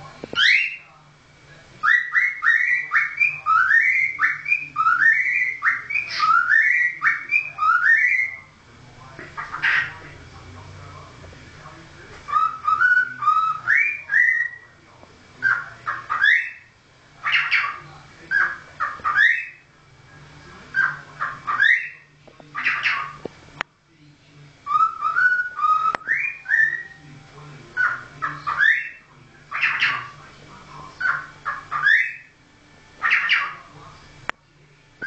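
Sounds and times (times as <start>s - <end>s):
cockatiel whistling a tune: 0.4s - 0.8s, 1.8s - 8.5s, 12.3s - 14.7s, 15.4s - 19.6s, 20.7s - 23.2s, 24.7s - 27.0s, 27.8s - 30.1s, 31.0s - 32.3s, 33.0s - 33.6s.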